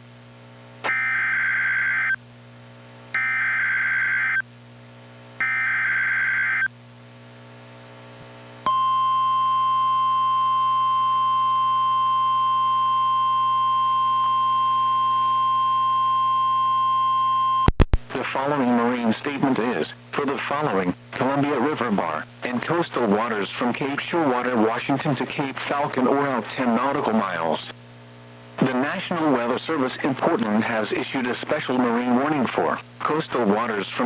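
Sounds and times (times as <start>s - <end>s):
steady warning alarm tone: 0.9s - 2.2s, 3.2s - 4.4s, 5.4s - 6.7s.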